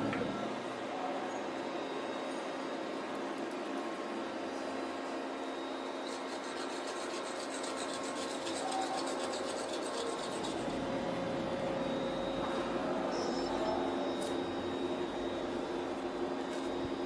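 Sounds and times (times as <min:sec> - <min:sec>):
workshop machinery hum: 0:00.0 - 0:17.0
abrasive rubbing on metal: 0:06.0 - 0:11.1.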